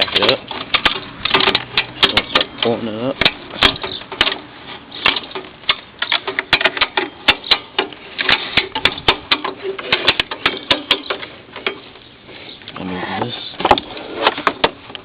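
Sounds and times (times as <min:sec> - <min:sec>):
hand winch ratchet clicking: 0:00.0 - 0:11.8.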